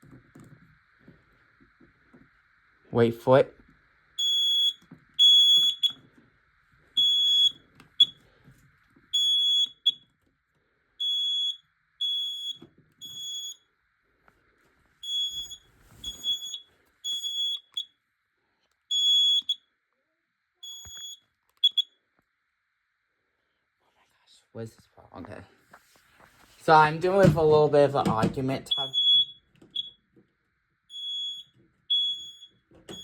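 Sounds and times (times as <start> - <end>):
smoke alarm beeping: 4.1 - 6.2, 6.9 - 8.3, 9.1 - 10.1, 11.0 - 13.7, 15.0 - 18.0, 18.9 - 19.7, 20.6 - 22.0, 27.0 - 30.1, 30.9 - 33.0.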